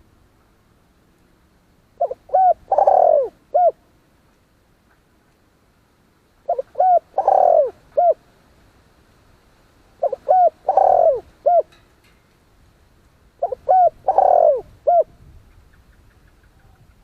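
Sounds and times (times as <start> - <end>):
dove cooing: 2.0 - 3.8, 6.4 - 8.2, 10.0 - 11.8, 13.4 - 15.1.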